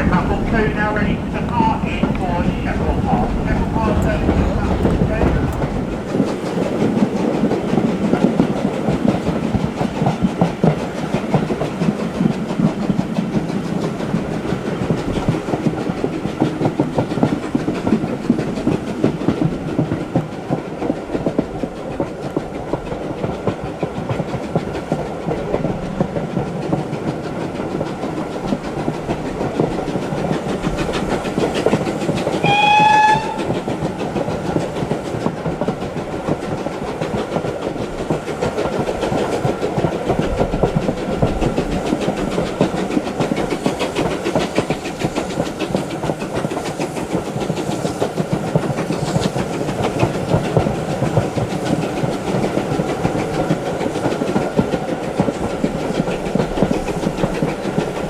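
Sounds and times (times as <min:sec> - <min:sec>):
wheels clattering over rail joints: 0:00.0 - 0:12.7
train rumbling: 0:00.0 - 0:58.0
steam locomotive whistle: 0:32.4 - 0:33.7.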